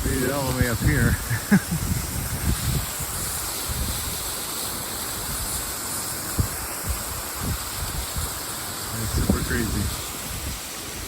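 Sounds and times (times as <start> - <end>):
wind buffeting microphone: 0.0 - 4.4, 6.3 - 8.4, 9.0 - 11.0
waterfall rushing: 0.0 - 11.0.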